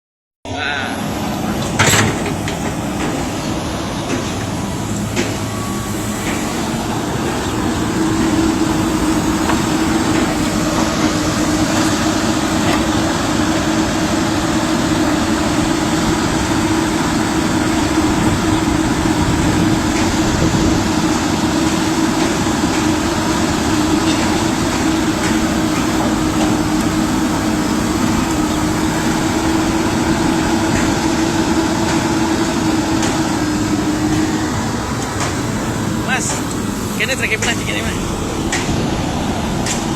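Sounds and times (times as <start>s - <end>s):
excavator engine droning: 0.5s - 39.9s.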